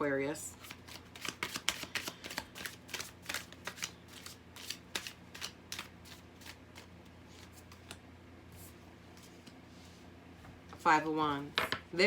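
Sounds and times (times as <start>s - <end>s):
cards being shuffled: 0.6s - 8.0s.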